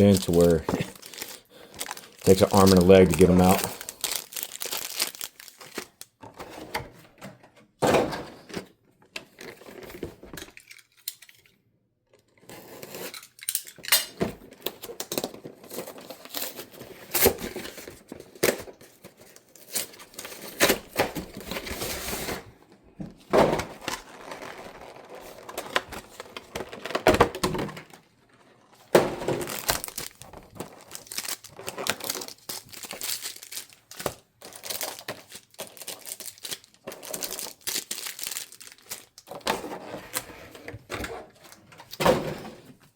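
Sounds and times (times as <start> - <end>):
cardboard tearing: 0.0 - 6.0, 12.4 - 13.4, 14.6 - 22.5, 23.4 - 27.7, 29.0 - 40.6
foil wrappers crinkling: 0.0 - 6.2, 12.7 - 18.0, 23.6 - 28.0, 28.8 - 40.2.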